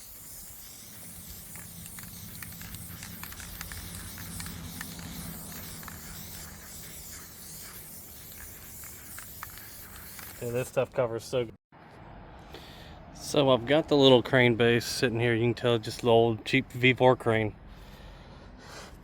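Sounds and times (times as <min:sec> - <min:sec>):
spray can hissing: 0:00.0 - 0:10.8.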